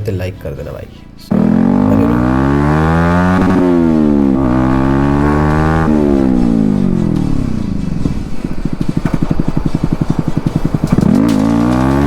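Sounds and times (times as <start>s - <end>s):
loud motorcycle engine revving: 1.3s - 12.0s
engine idling with exhaust pops: 3.4s - 12.0s.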